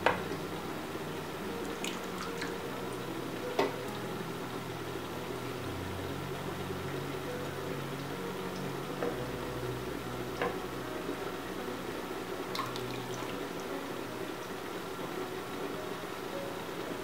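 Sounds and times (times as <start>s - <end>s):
steady low hum: 0.0s - 17.0s
water pouring: 1.6s - 3.0s, 12.5s - 13.6s.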